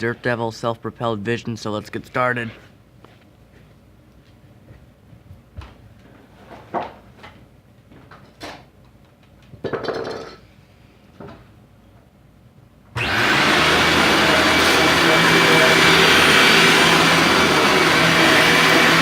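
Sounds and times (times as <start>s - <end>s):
vacuum cleaner motor running: 13.0s - 19.0s.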